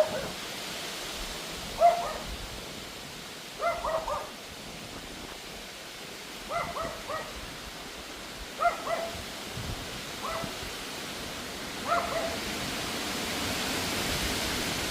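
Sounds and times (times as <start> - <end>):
wind: 0.0 - 14.9
dog barking in high-pitched yaps: 1.8 - 2.3, 3.6 - 4.4, 6.5 - 7.4, 8.6 - 9.2, 10.2 - 10.6, 11.8 - 12.5.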